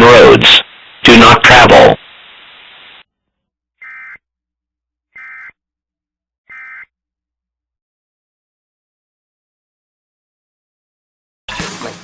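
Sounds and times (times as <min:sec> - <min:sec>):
warbling data-tone bursts: 0:03.8 - 0:04.2, 0:05.2 - 0:05.5, 0:06.5 - 0:06.9.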